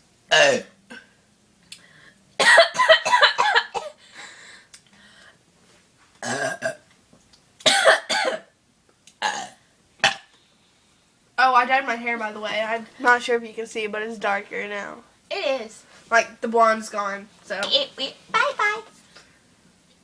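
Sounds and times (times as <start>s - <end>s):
girl burping: 0.3s - 1.1s, 6.2s - 6.8s, 9.2s - 10.3s.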